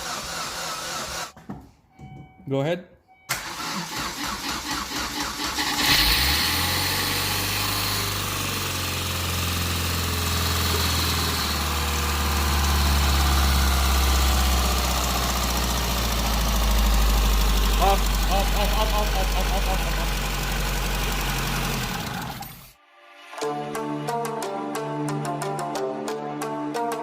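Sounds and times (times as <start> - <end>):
engine cranking and starting: 0.0 - 1.4, 3.3 - 22.8
engine idling: 4.3 - 22.8.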